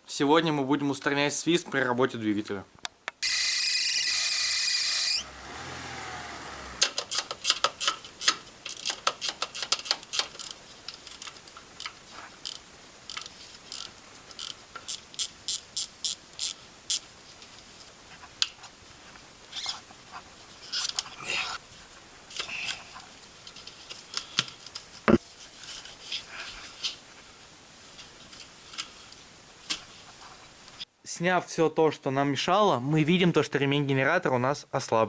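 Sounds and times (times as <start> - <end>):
alternator belt squealing: 3.2 - 5.6
sharp clicks and knocks: 6.8 - 15.3.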